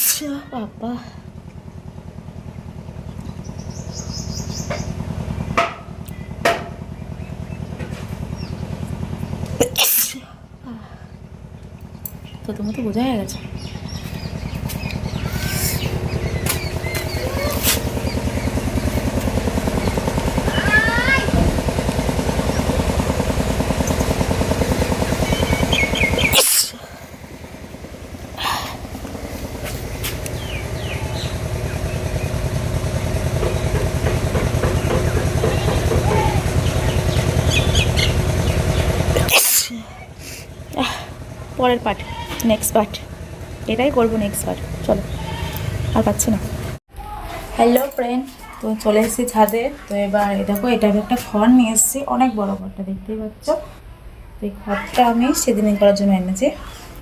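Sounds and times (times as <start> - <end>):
low rhythmic pulsing: 0.0 - 46.8
engine running with fast beat: 0.0 - 57.0
high bird trill: 3.3 - 5.1, 11.9 - 19.1, 24.9 - 26.9, 30.2 - 33.7, 34.8 - 39.3, 44.9 - 46.1
sharp sneezes: 9.6 - 10.3, 26.3 - 26.8, 39.2 - 39.9.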